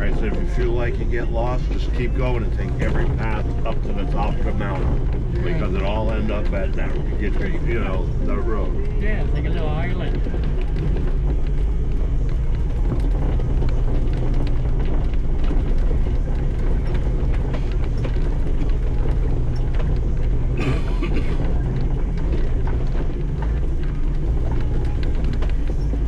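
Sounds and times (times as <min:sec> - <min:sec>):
utility vehicle engine running: 0:00.0 - 0:26.0.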